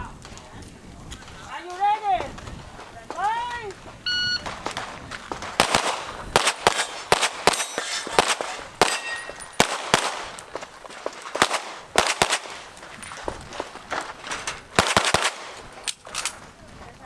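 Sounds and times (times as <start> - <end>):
rapid handgun shots: 4.4 - 12.8, 14.7 - 15.9.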